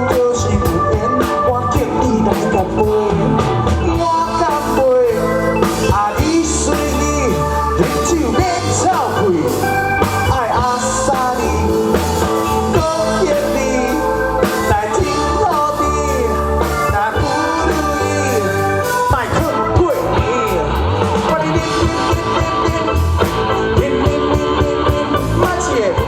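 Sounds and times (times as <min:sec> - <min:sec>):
live rock band playing: 0:00.0 - 0:26.0
person singing: 0:00.0 - 0:26.0.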